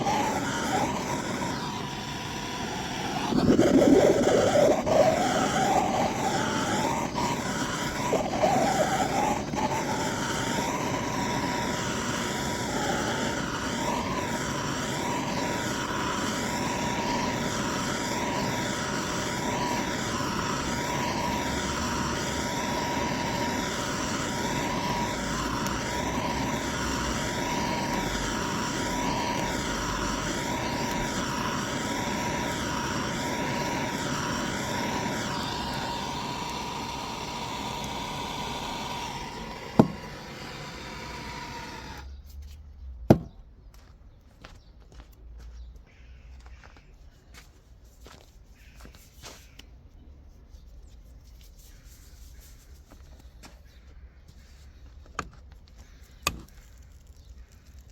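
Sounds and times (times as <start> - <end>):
constant whine: 0.0 - 42.1.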